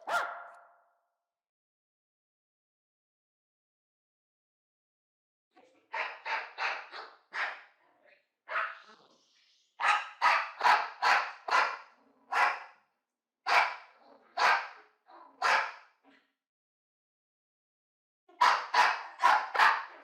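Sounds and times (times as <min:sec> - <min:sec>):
dog barking: 0:00.0 - 0:00.8, 0:05.9 - 0:07.8, 0:08.5 - 0:09.0, 0:09.8 - 0:12.8, 0:13.5 - 0:16.2, 0:18.3 - 0:20.0.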